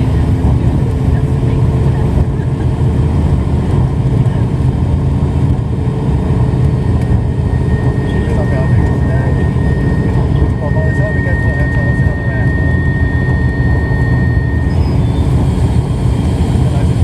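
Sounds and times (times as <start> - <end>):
propeller engines droning: 0.0 - 17.0.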